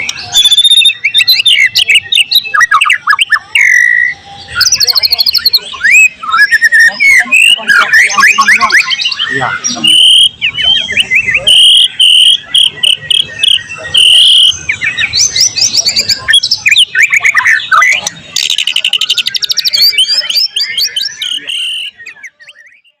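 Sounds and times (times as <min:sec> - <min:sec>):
songbird singing varied song: 0:00.0 - 0:23.0.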